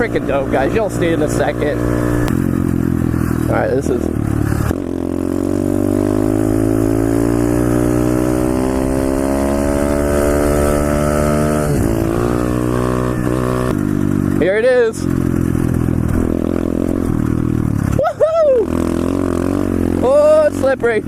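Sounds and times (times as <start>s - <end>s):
motorbike engine accelerating: 0.0s - 21.0s.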